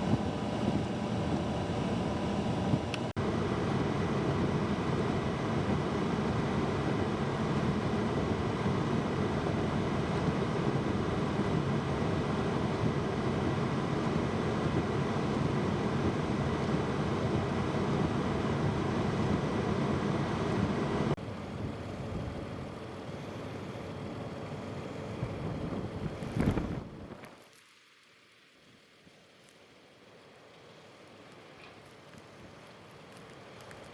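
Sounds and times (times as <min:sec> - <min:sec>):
wind buffeting microphone: 0:04.2 - 0:27.3.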